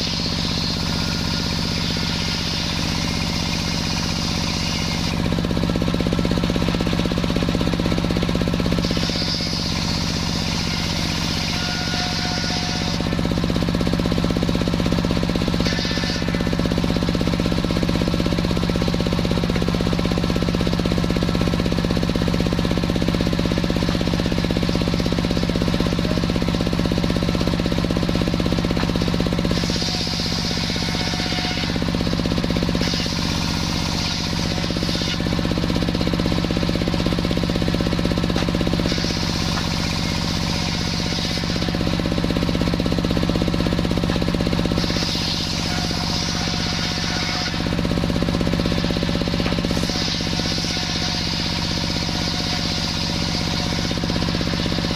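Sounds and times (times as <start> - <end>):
sawmill motor drone: 0.0 - 54.9
saw blade cutting wood hiss: 15.6 - 16.7.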